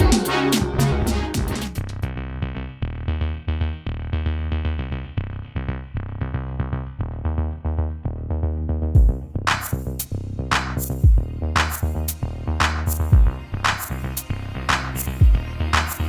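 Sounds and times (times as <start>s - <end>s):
kick drum and cymbal hits: 0.0s - 0.4s, 9.0s - 10.1s, 10.8s - 11.3s, 13.1s - 13.4s, 15.2s - 15.4s
drum-machine beat: 0.0s - 1.9s, 9.0s - 14.0s, 14.7s - 16.0s
synthesizer notes: 0.0s - 1.9s.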